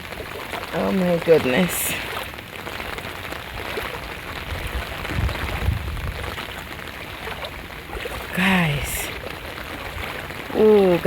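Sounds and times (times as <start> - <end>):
steady rain: 0.0 - 11.0
wading through water: 0.0 - 11.0.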